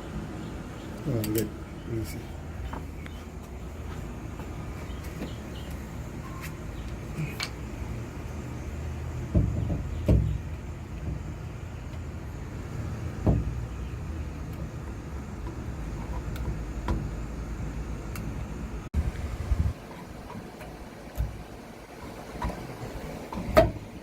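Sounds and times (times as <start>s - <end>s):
electric fan humming: 0.0s - 24.0s.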